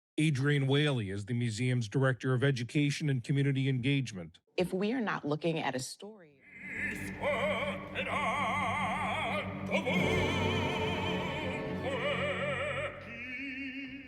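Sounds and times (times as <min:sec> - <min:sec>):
operatic singing with vibrato: 0:06.5 - 0:14.0
orchestral accompaniment: 0:06.7 - 0:13.5.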